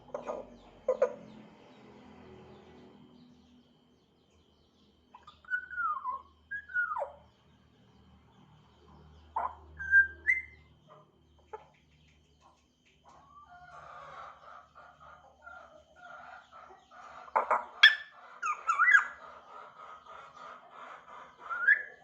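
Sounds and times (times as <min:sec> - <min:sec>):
parrot whistling and chattering: 0:17.4 - 0:19.2.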